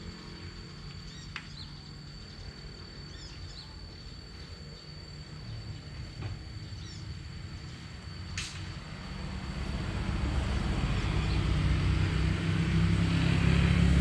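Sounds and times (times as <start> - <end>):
bird chirps: 1.0 - 2.4, 3.1 - 4.1.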